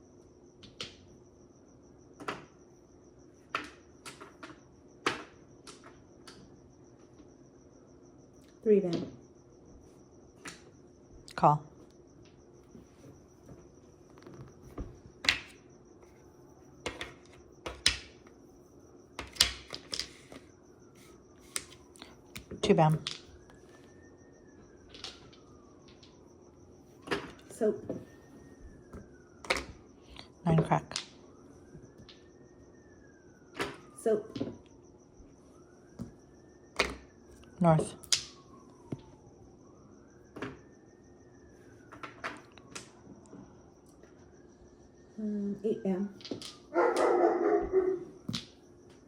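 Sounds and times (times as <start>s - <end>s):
tiles clacking on table: 15.2s - 15.6s, 16.8s - 18.2s, 19.2s - 20.5s.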